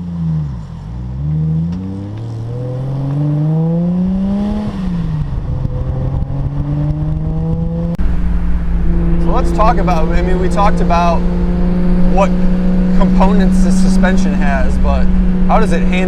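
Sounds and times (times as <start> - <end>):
car engine accelerating hard: 0.0 - 16.0.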